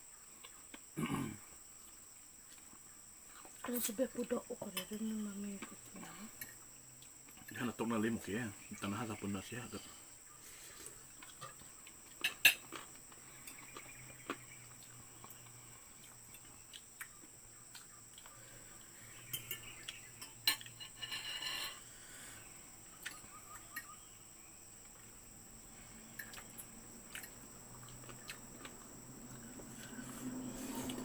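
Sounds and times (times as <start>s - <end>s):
cutlery clinking and scraping on plate: 12.2s - 12.8s, 19.3s - 21.9s.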